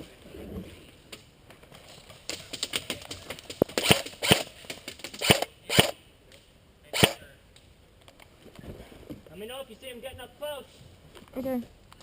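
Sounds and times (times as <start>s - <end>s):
airsoft gun shots: 3.8s - 4.5s, 5.1s - 6.0s, 7.0s - 7.2s.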